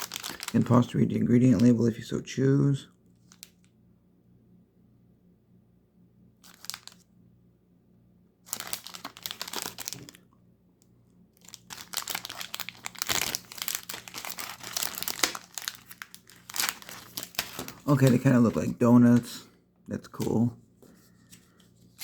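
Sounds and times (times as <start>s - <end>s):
candy wrapper crinkling and tearing: 0.0s - 1.8s, 3.2s - 3.6s, 6.4s - 7.1s, 8.5s - 10.3s, 11.4s - 19.3s.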